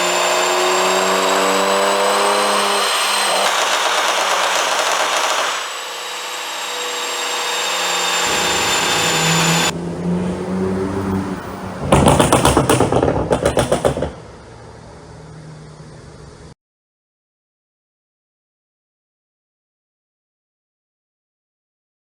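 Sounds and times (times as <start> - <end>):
car engine revving and idling: 0.0 - 4.0, 7.9 - 11.8.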